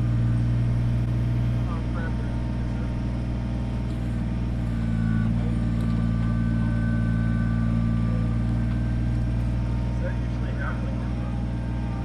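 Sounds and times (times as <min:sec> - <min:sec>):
diesel tractor engine running: 0:00.0 - 0:12.0.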